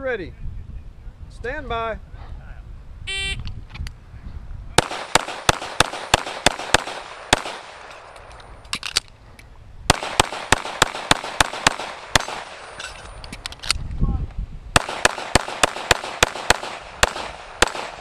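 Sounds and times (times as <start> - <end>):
shot timer beep: 3.1 - 3.4
rapid pistol fire: 4.8 - 8.1, 9.9 - 12.7, 14.8 - 18.0.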